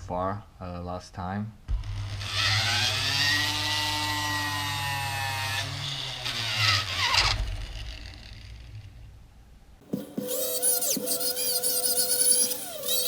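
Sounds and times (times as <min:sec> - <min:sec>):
grinder motor whining: 0:01.9 - 0:08.2, 0:09.8 - 0:13.0.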